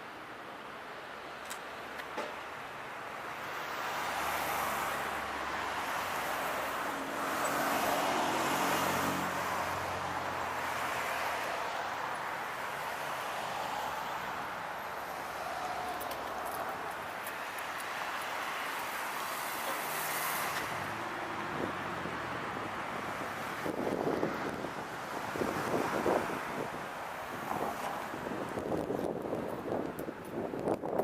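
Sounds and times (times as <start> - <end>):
vehicle passing by: 4.1 - 11.9.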